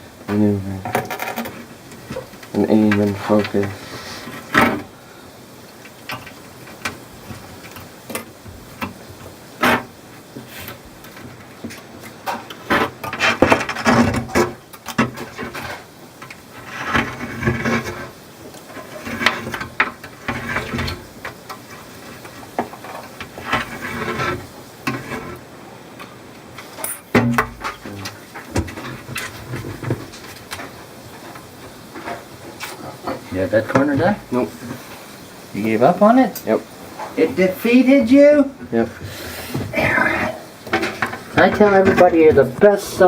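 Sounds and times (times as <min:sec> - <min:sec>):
tool scraping glass: 0:02.6 - 0:04.9, 0:12.6 - 0:15.9, 0:16.6 - 0:25.5
metal knocking on glass: 0:27.1 - 0:27.8.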